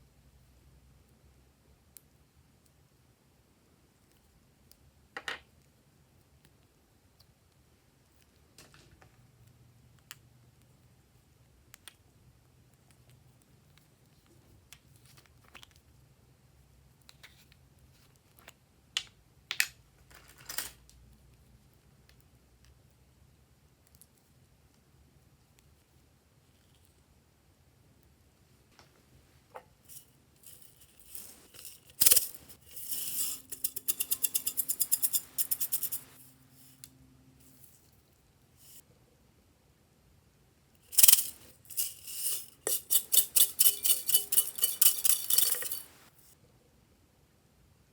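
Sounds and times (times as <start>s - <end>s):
low steady hum: 29.8s - 46.3s
container shaken and rattling: 29.9s - 36.8s, 40.9s - 46.2s.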